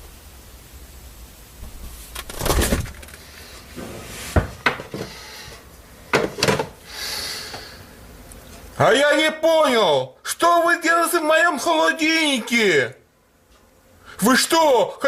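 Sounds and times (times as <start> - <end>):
objects knocking and clattering: 6.1 - 6.8.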